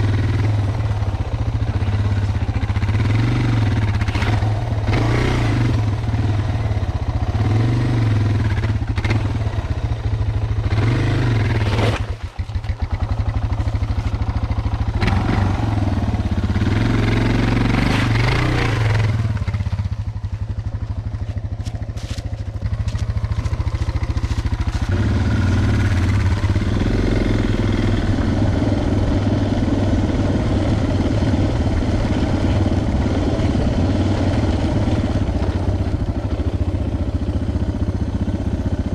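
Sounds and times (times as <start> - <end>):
motorcycle engine running: 0.0 - 38.9
clatter: 11.4 - 15.4, 17.3 - 20.2.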